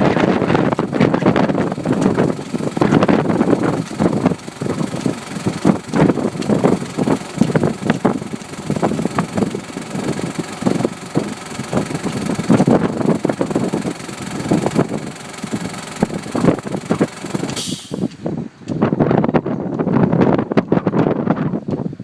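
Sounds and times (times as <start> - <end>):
gusting wind buffeting microphone: 0.0 - 22.0
short hiss: 17.5 - 18.2.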